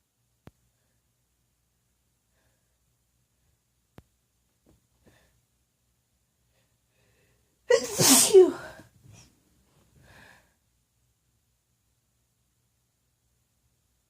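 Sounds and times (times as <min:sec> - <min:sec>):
woman sneezing: 0:07.7 - 0:08.8.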